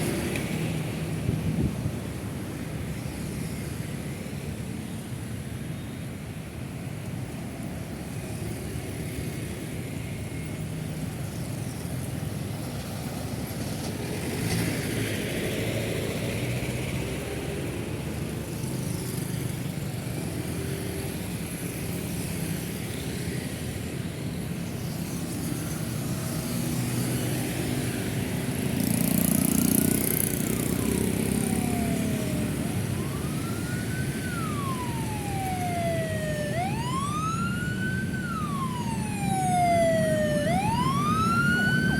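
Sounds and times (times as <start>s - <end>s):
busy road traffic: 0.0s - 41.9s
emergency vehicle siren wailing: 29.9s - 41.9s.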